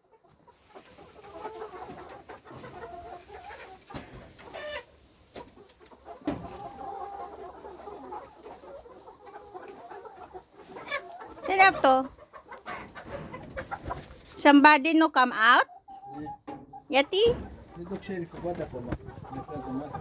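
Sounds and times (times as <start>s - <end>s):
chickens clucking: 0.0s - 20.0s.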